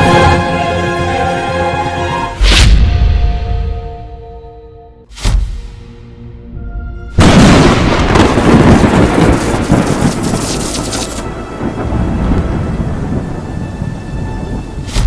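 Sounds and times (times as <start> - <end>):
thunder rumbling: 7.2 - 14.9
steady rain: 8.0 - 14.9.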